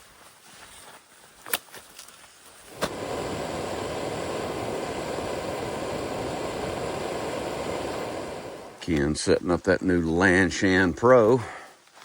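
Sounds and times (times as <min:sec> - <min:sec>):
stove burner hissing: 0:02.6 - 0:11.4.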